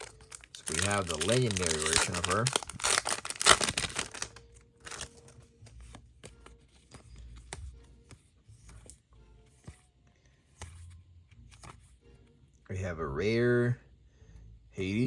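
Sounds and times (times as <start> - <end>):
cards being flipped by hand: 0.0 - 12.0.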